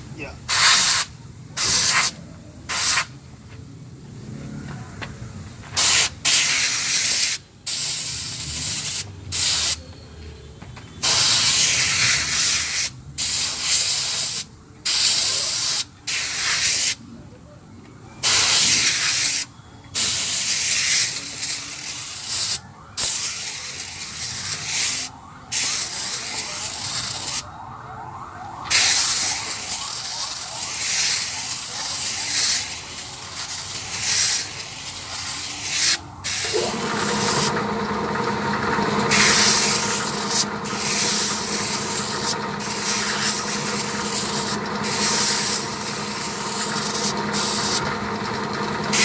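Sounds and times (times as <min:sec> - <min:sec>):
air blow gun hissing: 0:00.5 - 0:03.1, 0:18.2 - 0:27.4, 0:28.7 - 0:37.6, 0:39.0 - 0:48.0.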